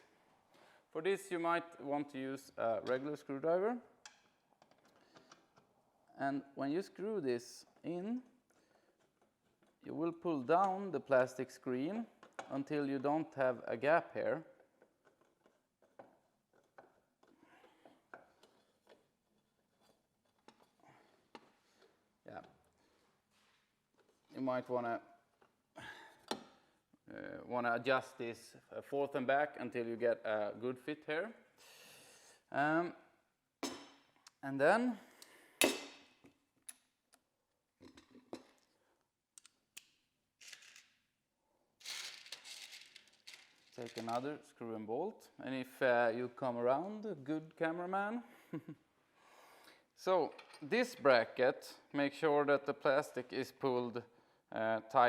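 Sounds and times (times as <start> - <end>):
screws and bolts clicking: 39.4 - 41.0.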